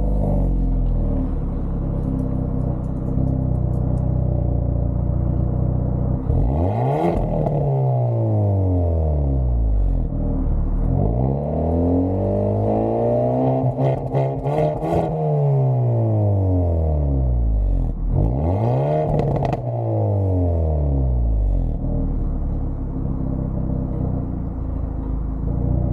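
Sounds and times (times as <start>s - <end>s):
car engine idling and revving: 0.0s - 25.9s
exhaust pops and crackles: 1.8s - 4.3s.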